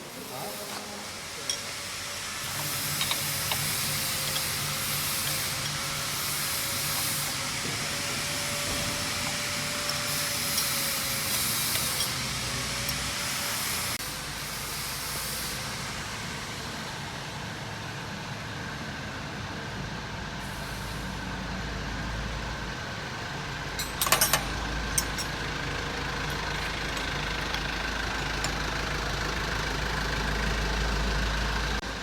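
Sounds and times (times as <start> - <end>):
wood turning lathe running: 25.4 - 31.8.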